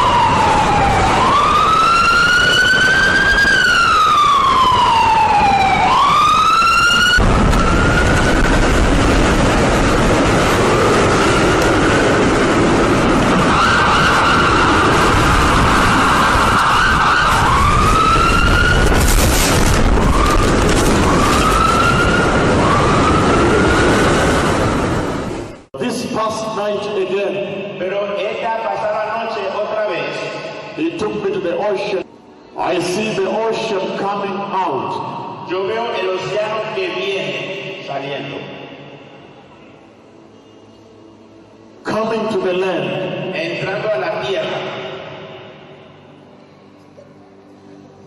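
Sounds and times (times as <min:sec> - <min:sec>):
siren whoops: 0:00.0 - 0:08.5, 0:12.8 - 0:25.2
siren wailing: 0:00.0 - 0:25.4
steady rumble: 0:07.2 - 0:13.6.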